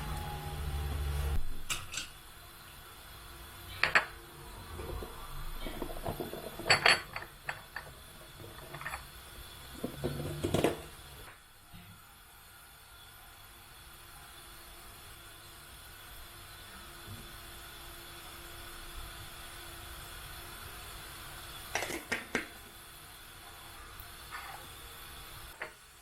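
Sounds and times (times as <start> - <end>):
dishes and cutlery clinking: 5.6 - 7.9.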